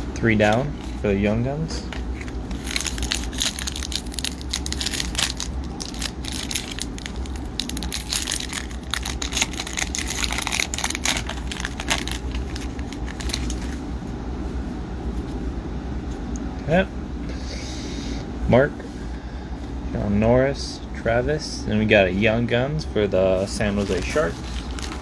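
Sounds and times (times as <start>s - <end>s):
wrapper crinkling: 1.9s - 13.8s, 23.5s - 25.0s.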